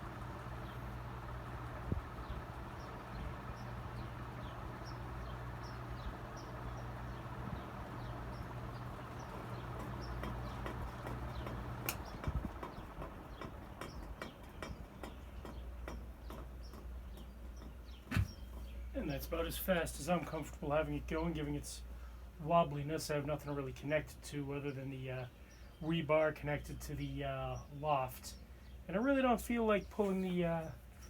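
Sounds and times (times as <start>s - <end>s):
air rush from fan blades: 0.0s - 17.0s
fan ticking: 0.0s - 25.2s
ceiling fan motor hum: 0.0s - 31.0s
fan switch click: 9.4s - 12.5s.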